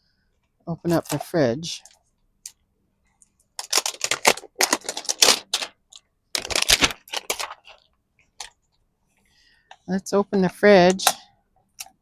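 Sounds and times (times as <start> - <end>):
plastic clicking and crackling: 3.2 - 8.6.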